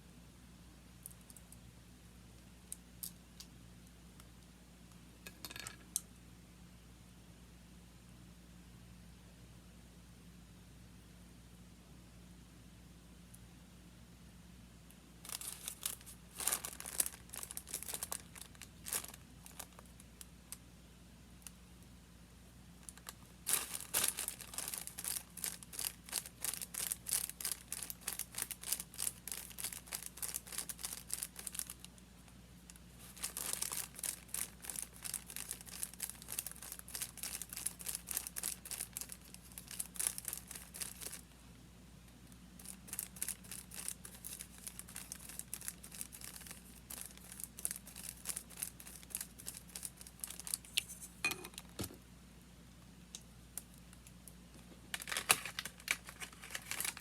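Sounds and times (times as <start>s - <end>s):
paper crinkling and rustling: 15.3s - 19.8s, 22.9s - 31.9s, 33.0s - 41.2s, 42.6s - 51.0s, 54.9s - 57.0s.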